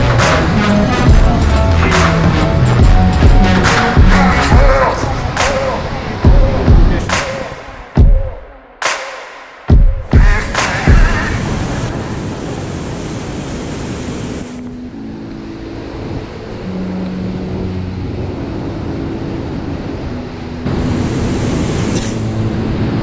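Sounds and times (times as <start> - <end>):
river water rushing: 0.0 - 7.8, 10.5 - 23.0.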